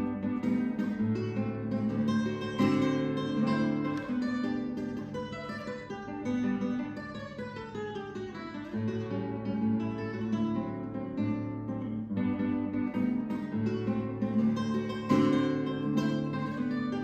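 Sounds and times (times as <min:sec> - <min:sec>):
acoustic guitar music: 0:00.0 - 0:17.0.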